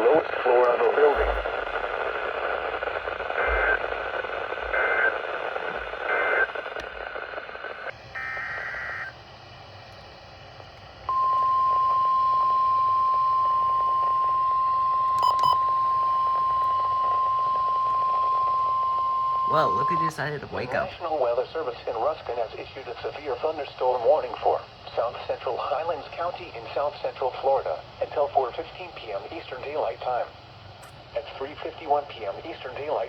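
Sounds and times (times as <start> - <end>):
radio static: 0.0 - 9.1, 15.2 - 21.1
steady alarm tone: 11.1 - 21.0.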